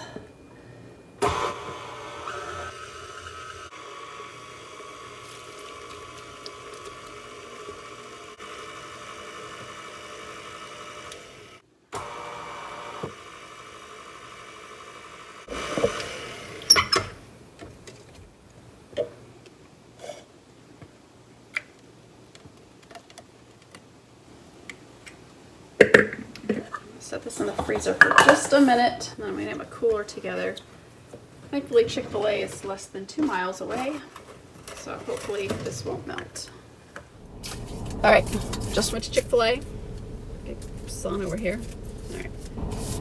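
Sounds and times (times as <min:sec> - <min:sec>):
electric kitchen mixer motor running: 0:01.2 - 0:16.6.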